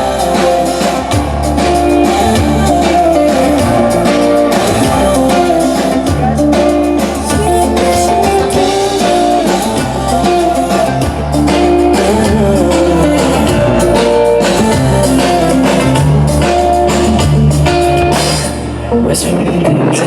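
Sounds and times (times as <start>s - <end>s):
live pop band through speakers: 0.0s - 20.0s.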